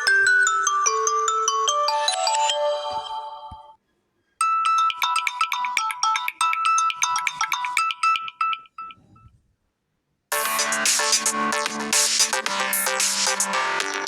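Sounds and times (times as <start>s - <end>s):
phone ringtone: 0.0s - 3.7s, 4.4s - 9.4s.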